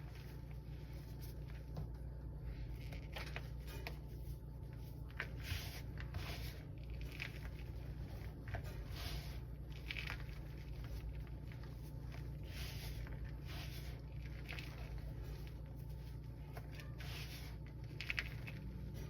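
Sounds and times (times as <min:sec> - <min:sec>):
chalk squeaking and crunching: 0:05.1 - 0:19.0.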